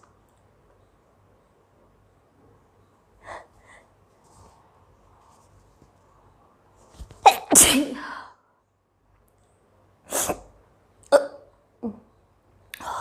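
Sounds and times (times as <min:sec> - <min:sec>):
woman sneezing: 0:07.3 - 0:08.1.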